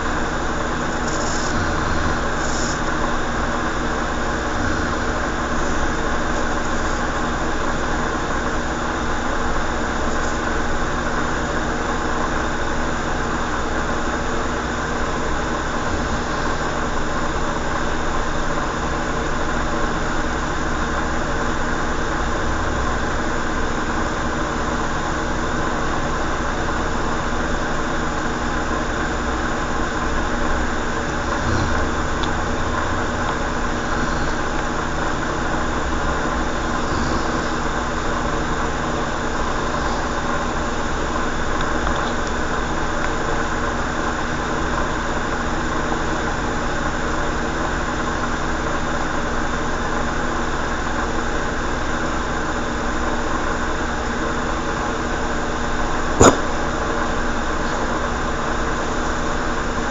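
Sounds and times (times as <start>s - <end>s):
mechanical hum: 0.0s - 59.9s
hiss: 1.0s - 3.0s.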